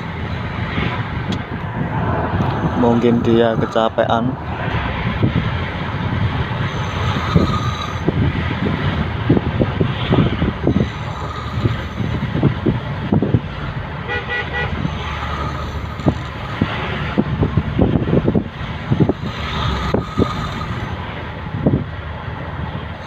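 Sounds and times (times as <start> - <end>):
road traffic: 0.0 - 23.0
vehicle horn tooting: 14.0 - 14.8.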